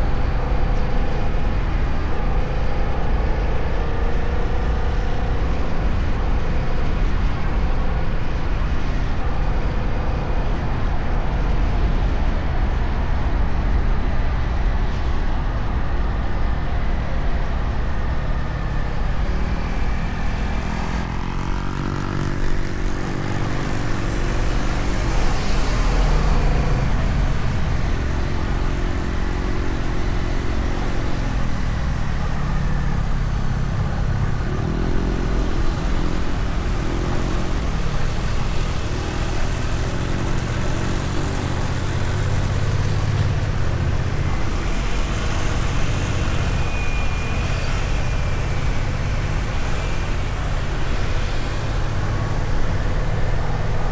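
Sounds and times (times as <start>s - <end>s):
pitched drone: 16.4s - 53.9s.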